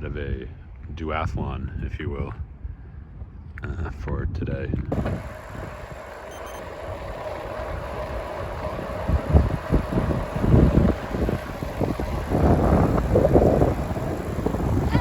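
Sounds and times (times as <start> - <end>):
wind buffeting microphone: 0.0 - 15.0
steady hum: 4.9 - 15.0.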